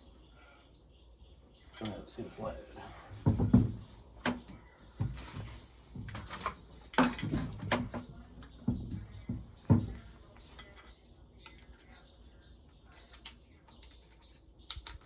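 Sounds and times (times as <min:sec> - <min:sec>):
metal tools clinking and clunking: 0:05.0 - 0:08.1.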